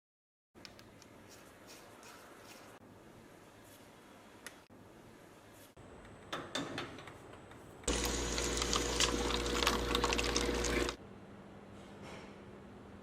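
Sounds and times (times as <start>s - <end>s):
small electric motor humming: 7.9s - 11.0s.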